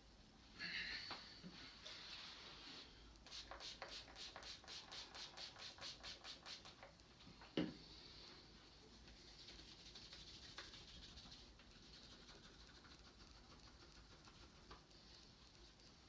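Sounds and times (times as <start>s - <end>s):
hands rubbing rhythmically: 3.3s - 6.9s, 9.0s - 16.0s.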